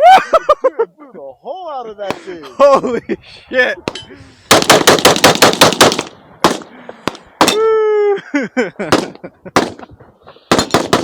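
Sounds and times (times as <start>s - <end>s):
rapid gunshots: 4.5s - 7.6s, 10.5s - 11.0s
person shouting: 7.5s - 8.2s.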